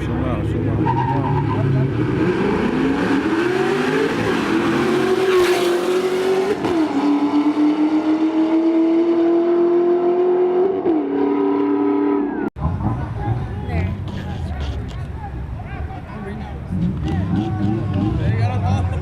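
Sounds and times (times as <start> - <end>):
car engine revving: 0.1 - 15.1.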